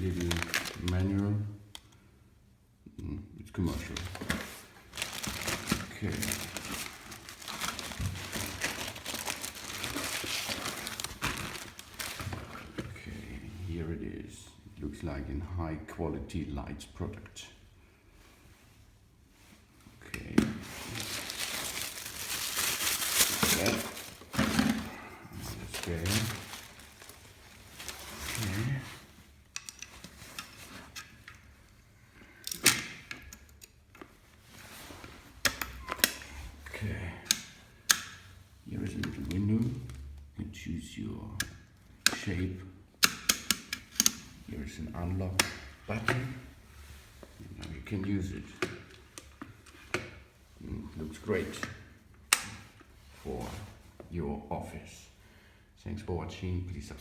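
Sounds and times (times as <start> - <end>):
packaging crinkling: 0.0 - 1.4, 3.8 - 12.8, 20.6 - 30.8.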